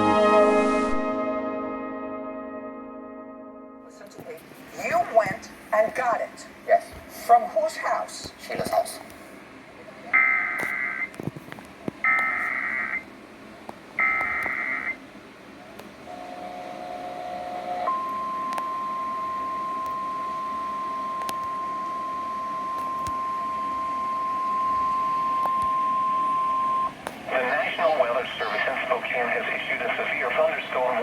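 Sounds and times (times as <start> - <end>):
steady warning alarm tone: 10.1 - 11.2, 12.0 - 13.1, 14.0 - 15.0, 16.1 - 28.6
raspy digital data tones: 12.1 - 13.0
brief lower tone: 17.7 - 27.0.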